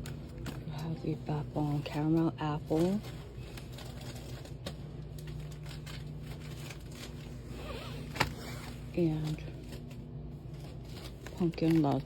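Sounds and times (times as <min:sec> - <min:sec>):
plastic packaging rustling: 0:00.0 - 0:12.0.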